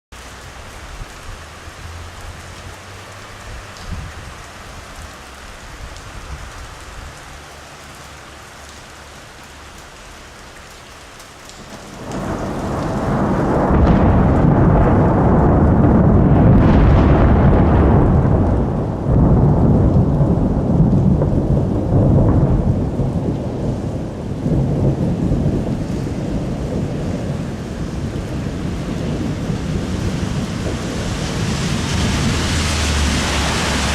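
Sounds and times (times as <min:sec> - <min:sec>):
steady rain falling: 0:00.1 - 0:33.9
deep roll of thunder: 0:11.6 - 0:33.9.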